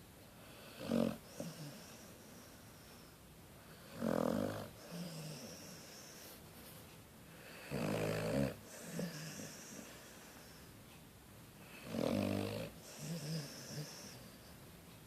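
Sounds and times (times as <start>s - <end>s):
dog snoring: 0.4s - 3.0s, 3.7s - 6.2s, 7.4s - 10.6s, 11.6s - 14.5s.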